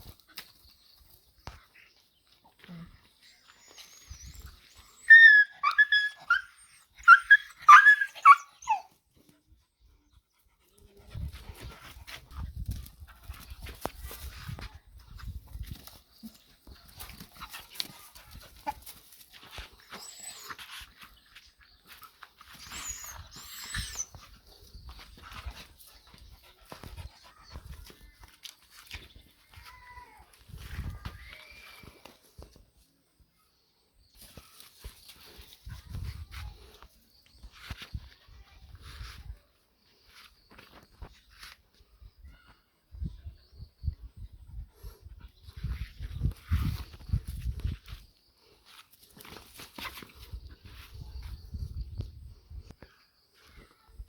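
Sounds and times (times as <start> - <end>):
puppy whimpering and yelping: 5.0 - 8.9, 22.6 - 24.2.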